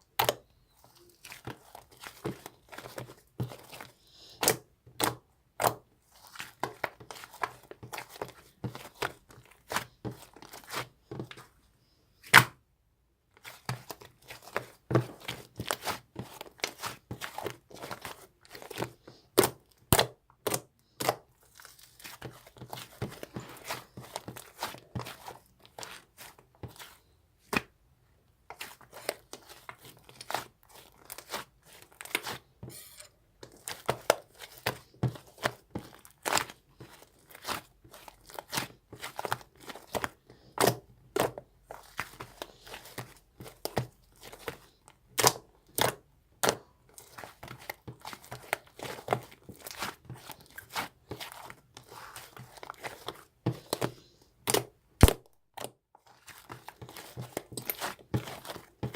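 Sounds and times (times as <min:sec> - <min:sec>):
clicks taps and crinkling: 0:00.0 - 0:05.8, 0:33.4 - 0:58.9.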